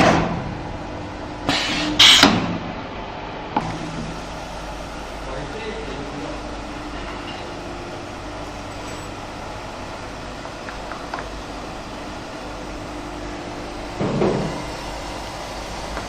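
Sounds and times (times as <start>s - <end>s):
welding machine humming: 3.6s - 16.0s.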